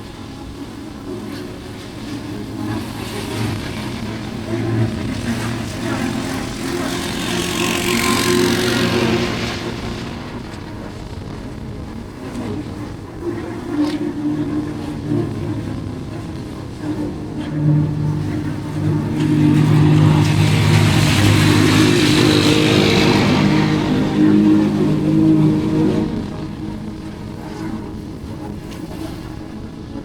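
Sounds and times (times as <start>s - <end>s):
vehicle engines running: 2.4s - 11.3s, 15.0s - 28.2s
vehicle passing close: 2.9s - 10.9s, 16.4s - 27.3s.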